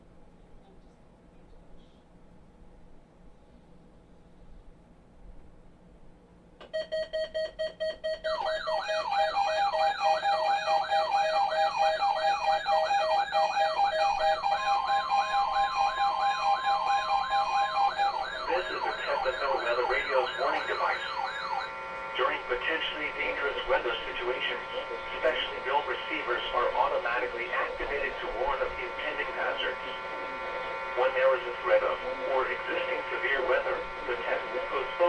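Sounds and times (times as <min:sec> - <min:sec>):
fast electronic beeping: 0:07.4 - 0:22.8
warbling siren-like alarm tone: 0:08.1 - 0:35.0
person speaking: 0:18.3 - 0:21.2.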